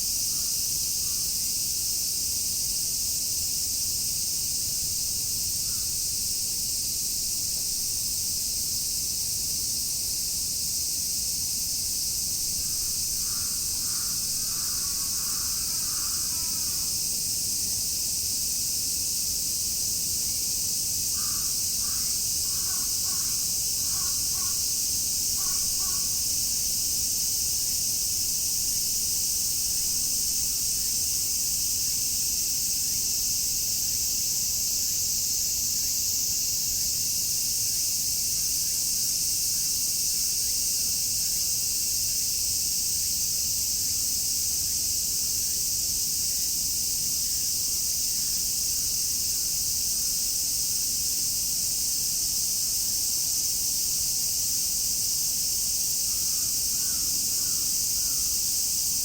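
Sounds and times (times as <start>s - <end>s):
cicadas droning: 0.0s - 59.0s.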